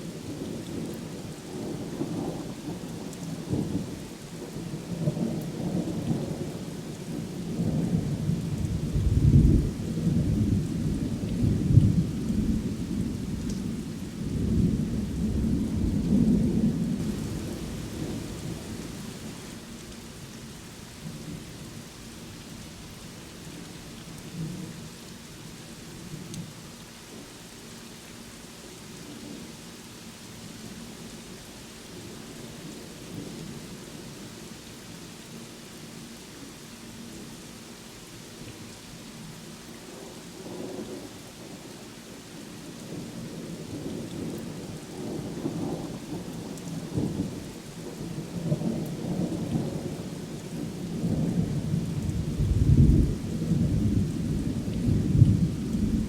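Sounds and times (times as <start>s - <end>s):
steady rain: 0.0s - 56.0s
thunder rumbling: 14.3s - 19.6s.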